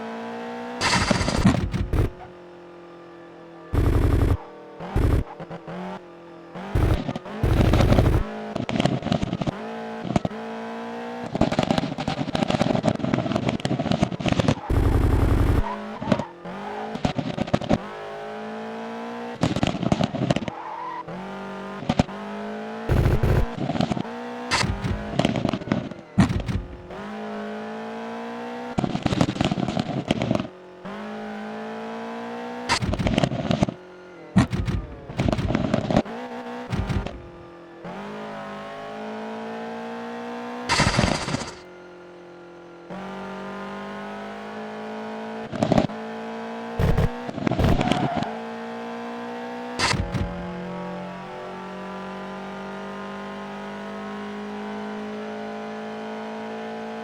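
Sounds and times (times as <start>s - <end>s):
car engine idling and revving: 0.0s - 57.0s.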